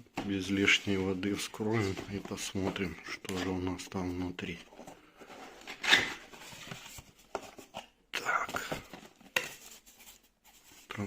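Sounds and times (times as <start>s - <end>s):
cardboard box rustling: 4.5s - 7.8s.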